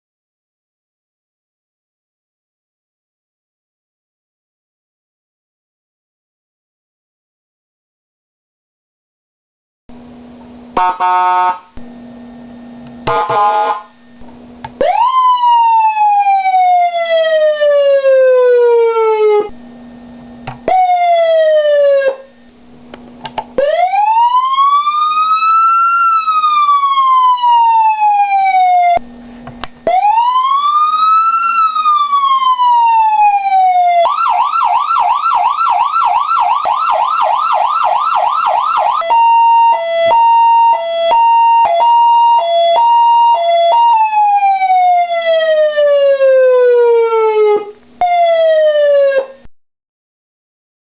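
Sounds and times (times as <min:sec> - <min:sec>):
low hum: 0:09.9 - 0:15.1, 0:19.4 - 0:20.7
electronic siren wailing and yelping: 0:10.7 - 0:22.5, 0:23.6 - 0:29.1, 0:29.8 - 0:49.5.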